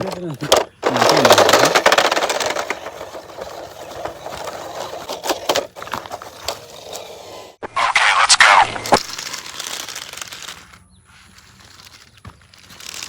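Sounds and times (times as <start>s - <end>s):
toy car motor whirring: 0.5s - 8.2s, 8.8s - 13.0s
sharp clicks: 7.8s - 10.8s.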